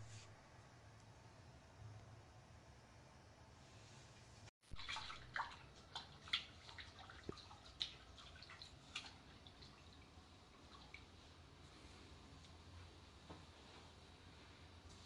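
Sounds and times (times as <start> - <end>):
water splashes and drips: 4.7 - 11.4.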